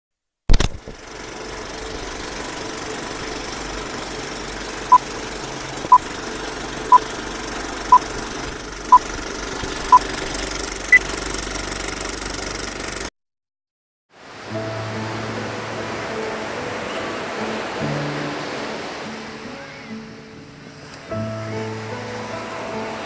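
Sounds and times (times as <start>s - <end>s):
machine running noise: 0.5s - 13.1s.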